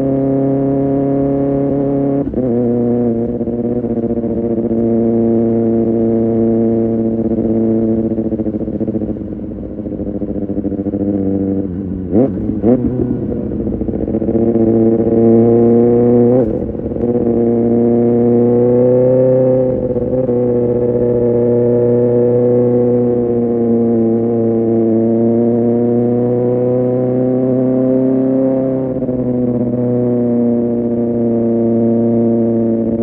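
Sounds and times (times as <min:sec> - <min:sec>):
motorcycle engine running: 0:00.0 - 0:33.0.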